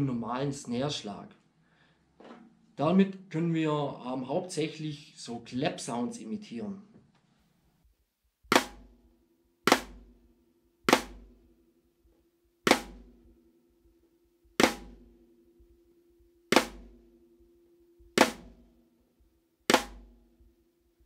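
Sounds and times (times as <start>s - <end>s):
snare drum rim click hits: 8.5s - 9.0s, 9.7s - 10.1s, 10.9s - 11.3s, 12.7s - 13.1s, 14.6s - 15.1s, 16.5s - 17.0s, 18.2s - 18.6s, 19.7s - 20.2s.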